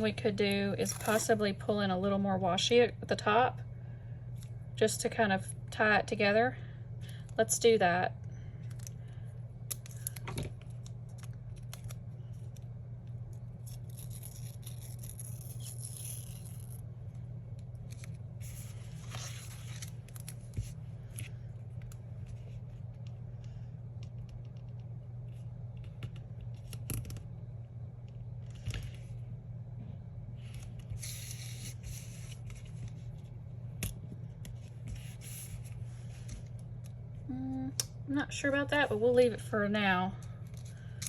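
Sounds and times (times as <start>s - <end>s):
steady low hum: 0.0s - 41.0s
paper rustling: 17.9s - 21.4s.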